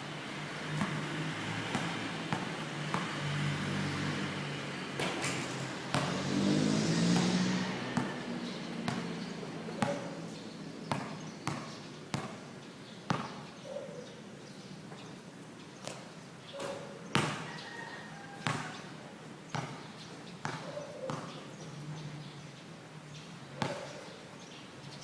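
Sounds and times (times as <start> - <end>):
basketball bouncing on hard court: 0.8 - 1.0, 1.6 - 3.4, 5.8 - 6.4, 8.0 - 8.2, 8.8 - 10.2, 10.8 - 12.5, 13.1 - 13.4, 17.1 - 17.6, 18.4 - 18.8, 19.5 - 21.4.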